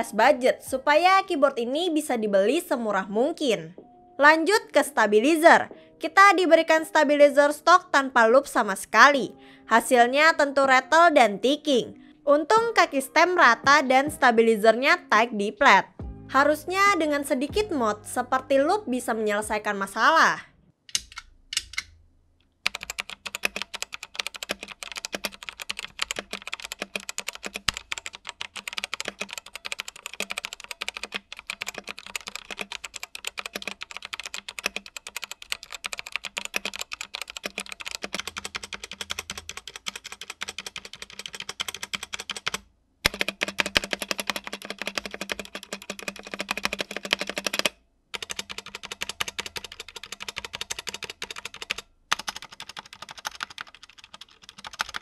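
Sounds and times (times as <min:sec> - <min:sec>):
mechanical keyboard key clacking: 0:22.7 - 0:55.0.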